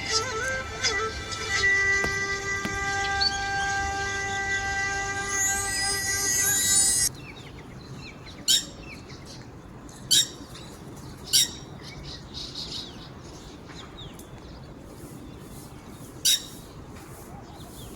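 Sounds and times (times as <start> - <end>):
background music: 0.0 - 7.1.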